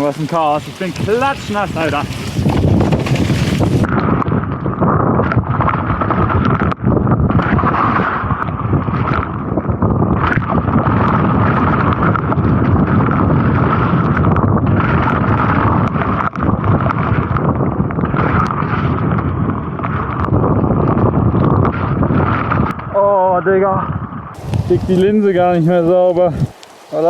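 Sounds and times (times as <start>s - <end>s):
bike knocking over rough ground: 0.0s - 4.1s
wind buffeting microphone: 0.0s - 27.0s.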